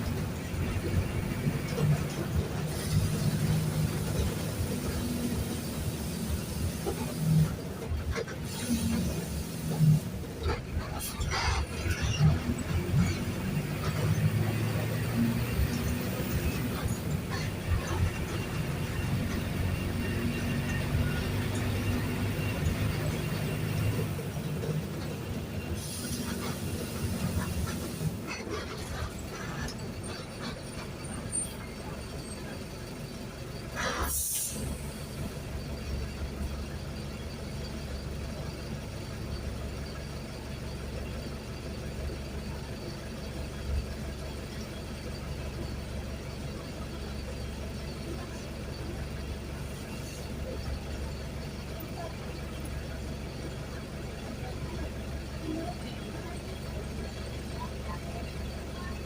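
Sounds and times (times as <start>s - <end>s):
bus body rattling: 0.0s - 59.0s
bus diesel engine running: 0.0s - 59.0s
air hiss: 33.8s - 34.9s.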